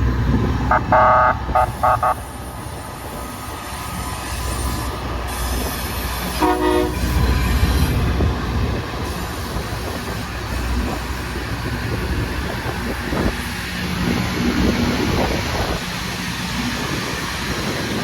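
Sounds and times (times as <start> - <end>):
rail grinder rumble and hiss: 0.0 - 18.0
train horn blast: 0.7 - 2.4, 6.2 - 7.2.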